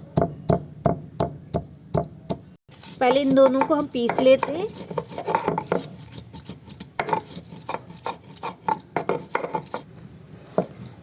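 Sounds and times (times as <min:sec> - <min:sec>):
stone roller scraping knocks: 0:02.7 - 0:09.8, 0:10.5 - 0:11.0.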